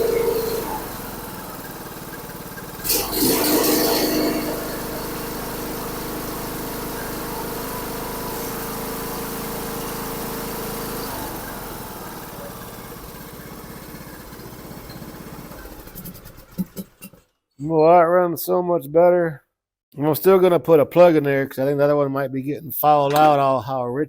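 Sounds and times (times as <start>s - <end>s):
riding mower engine running: 0.0s - 17.2s.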